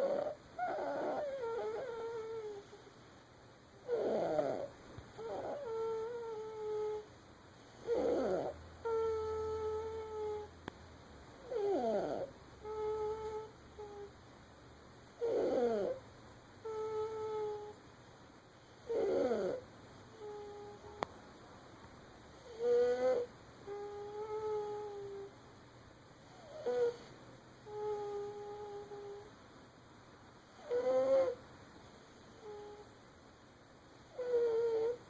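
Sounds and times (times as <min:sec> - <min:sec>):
baby snoring: 0:00.0 - 0:02.8, 0:03.8 - 0:07.1, 0:07.8 - 0:10.5, 0:11.4 - 0:14.1, 0:15.2 - 0:16.0, 0:18.8 - 0:19.6, 0:22.4 - 0:25.3, 0:30.6 - 0:31.4, 0:32.4 - 0:32.8, 0:34.1 - 0:35.0.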